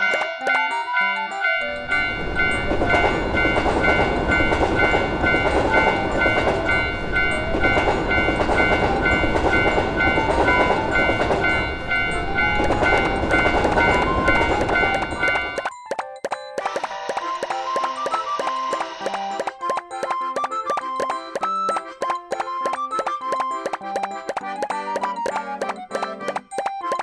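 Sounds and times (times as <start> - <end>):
crossing warning bell ringing: 0.0 - 15.7, 16.7 - 19.6
train rumbling: 1.6 - 15.7.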